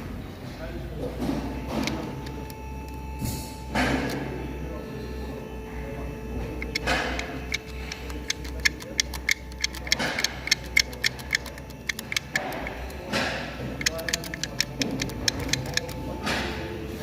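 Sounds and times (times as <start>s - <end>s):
diesel engine humming: 0.0s - 17.0s
ticking rattle: 6.6s - 13.1s, 13.8s - 16.0s.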